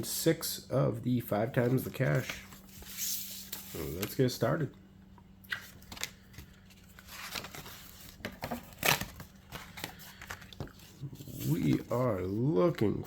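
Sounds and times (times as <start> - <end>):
stiff paper rustling: 5.6 - 12.8.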